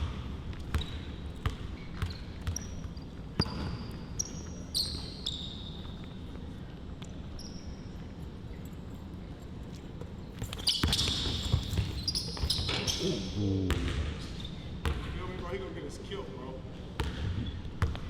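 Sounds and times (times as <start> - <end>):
basketball bouncing: 0.0 - 3.9, 10.0 - 12.8, 17.0 - 18.0
sneakers squeaking on court: 0.0 - 15.4, 16.8 - 18.0.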